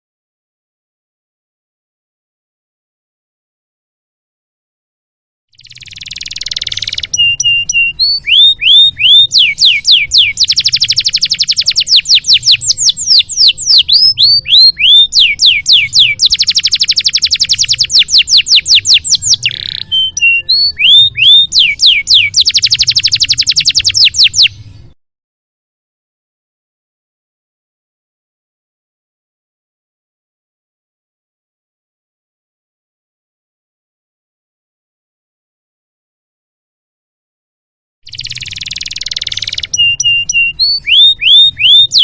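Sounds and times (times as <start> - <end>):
canary singing trills: 5.6 - 25.0, 38.1 - 42.0.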